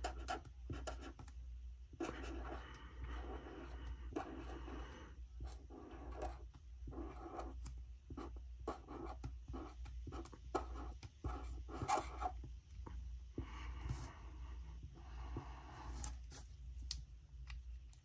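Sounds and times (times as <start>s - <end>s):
brush pen scratching on paper: 0.0s - 1.3s, 1.9s - 12.5s
steady low hum: 0.0s - 18.0s.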